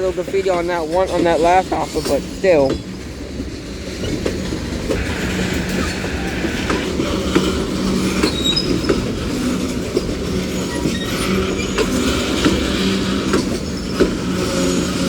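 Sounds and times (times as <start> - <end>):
steel wheels rumbling on rail: 0.0 - 15.0
wheels clicking over rail joints: 0.0 - 15.0
faint wheel squeals: 0.1 - 15.0.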